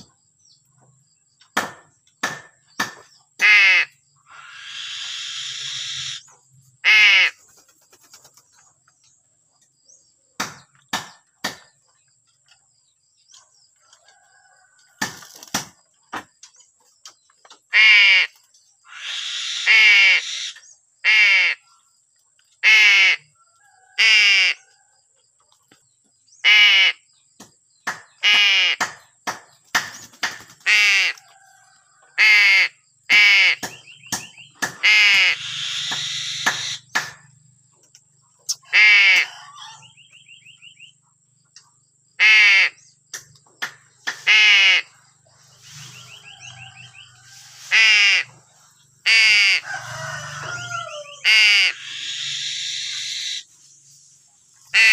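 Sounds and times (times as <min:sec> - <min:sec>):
myna rattling calls: 0:02.2 - 0:08.7, 0:17.7 - 0:21.6, 0:32.2 - 0:37.2, 0:45.6 - 0:53.4, 0:54.6 - 0:54.9
crow cawing: 0:03.4 - 0:07.4, 0:18.9 - 0:21.6, 0:34.8 - 0:36.8, 0:49.1 - 0:53.4.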